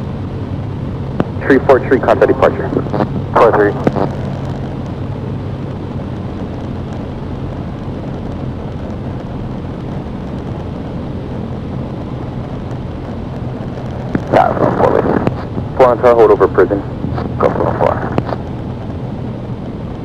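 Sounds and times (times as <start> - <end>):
airflow rush in cabin: 0.0 - 20.0
light aircraft engine humming: 0.0 - 20.0.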